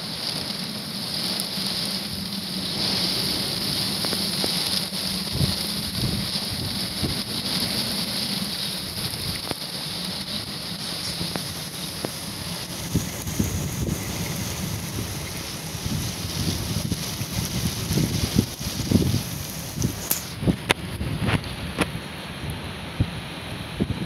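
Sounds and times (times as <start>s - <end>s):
rain falling: 0.0s - 24.0s
wind gusting on microphone: 0.0s - 24.0s.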